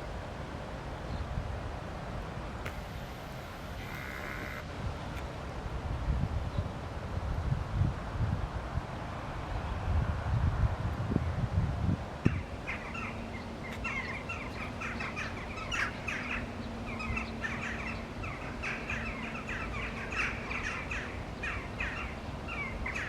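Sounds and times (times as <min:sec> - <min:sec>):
flock of small birds chirping: 0:12.3 - 0:23.0.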